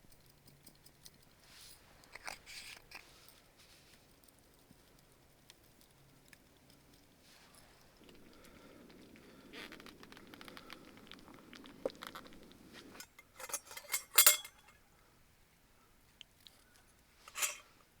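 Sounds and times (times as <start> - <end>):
cutlery scraping cookware: 12.9 - 14.7, 17.3 - 17.7
spoon clinks: 13.3 - 14.7, 17.3 - 17.6.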